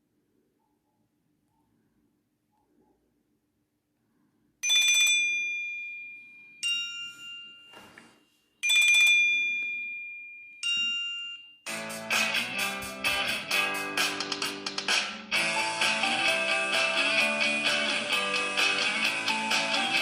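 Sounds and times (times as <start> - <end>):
bell-like phone ringtone: 4.6 - 12.4, 15.3 - 20.0
busy ringtone melody: 4.6 - 20.0.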